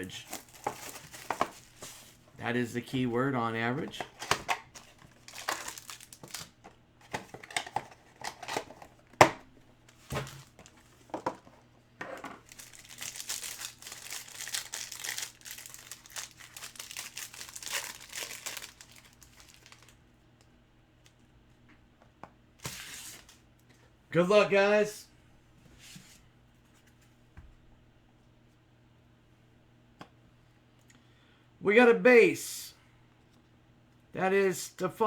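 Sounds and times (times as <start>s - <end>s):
plastic wrapping tearing and crinkling: 0.2s - 1.8s, 4.2s - 6.6s, 12.4s - 20.0s.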